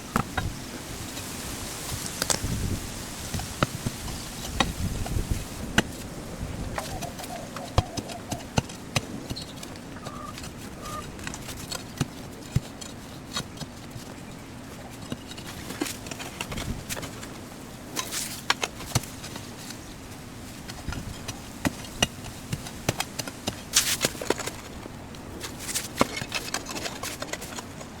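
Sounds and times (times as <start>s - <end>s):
short bird calls: 6.1s - 8.6s, 9.4s - 11.1s.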